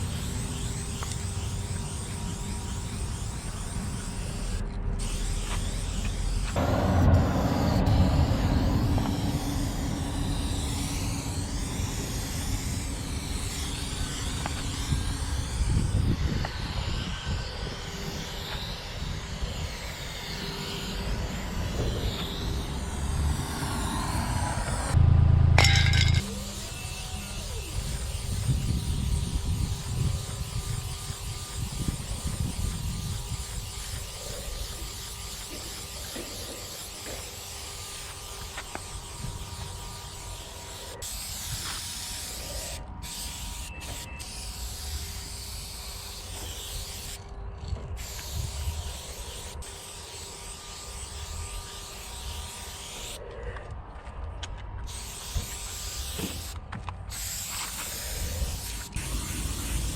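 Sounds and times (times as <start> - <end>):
spray paint can hissing: 0.0 - 25.0, 25.6 - 53.2, 54.8 - 59.9
loud low rumble: 6.6 - 15.4, 22.6 - 26.2.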